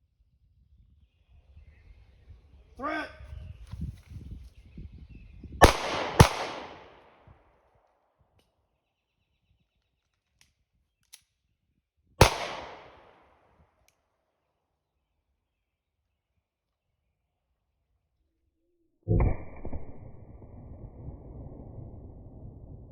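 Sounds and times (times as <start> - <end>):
pistol shots with echo: 5.6 - 7.2, 12.2 - 13.3.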